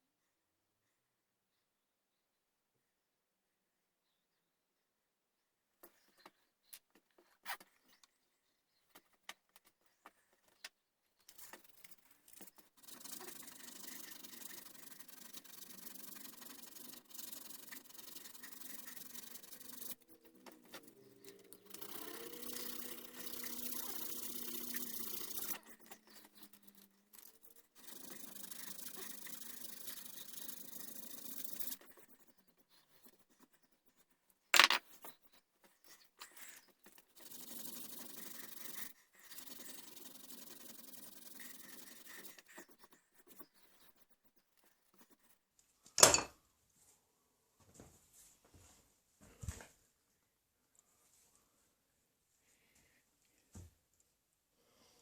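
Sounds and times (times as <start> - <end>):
hand tool scraping wood: 11.3 - 33.2, 34.6 - 44.0.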